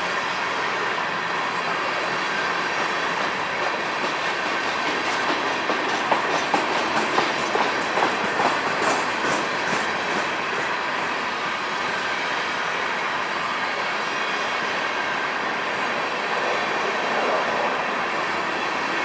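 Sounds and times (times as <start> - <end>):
train wheels rumbling on rail: 0.0 - 19.0
wheels clacking over rail joints: 2.1 - 11.2.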